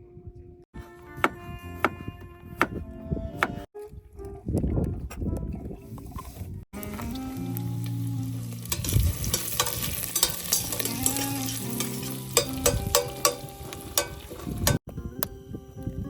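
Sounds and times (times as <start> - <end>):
food sizzling in a pan: 7.0 - 14.8
utensil scraping a pan: 8.7 - 14.8.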